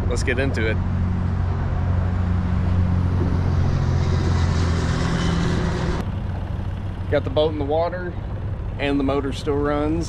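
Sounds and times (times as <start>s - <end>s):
engine idling: 2.0s - 10.0s.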